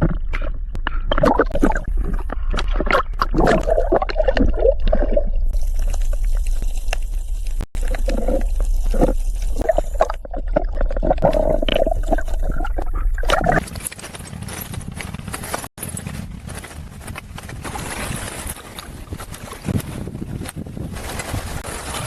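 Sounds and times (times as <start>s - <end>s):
water sloshing and splashing: 0.0s - 13.9s.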